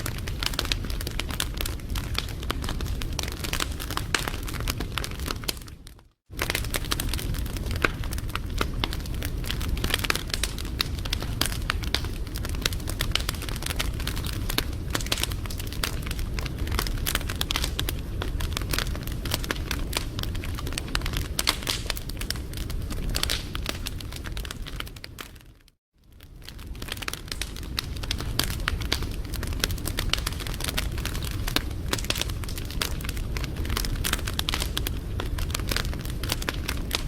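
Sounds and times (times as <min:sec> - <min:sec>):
low rumble of flames: 0:00.0 - 0:37.0
wood fire crackling and popping: 0:00.0 - 0:37.0.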